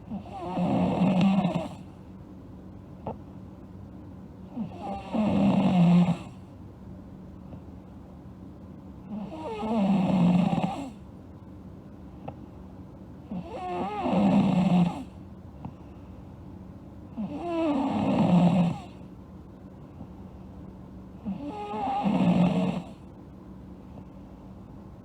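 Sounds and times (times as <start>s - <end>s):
girl snoring: 0.1s - 1.8s, 4.6s - 6.3s, 9.1s - 10.9s, 13.3s - 15.1s, 17.2s - 19.0s, 21.2s - 23.0s.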